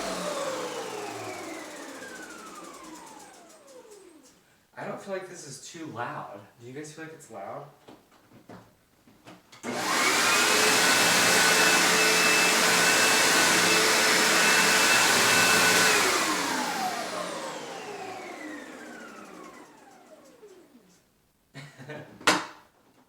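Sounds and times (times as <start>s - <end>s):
vacuum cleaner running: 0.0s - 4.4s, 9.6s - 21.0s.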